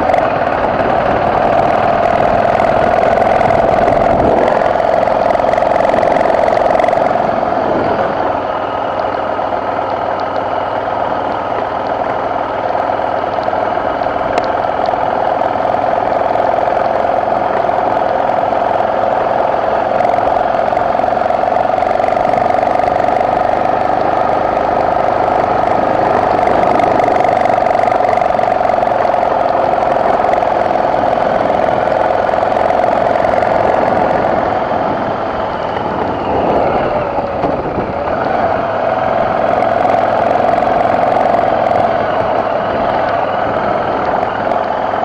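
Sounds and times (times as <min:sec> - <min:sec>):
motorcycle engine running: 0:00.0 - 0:45.0.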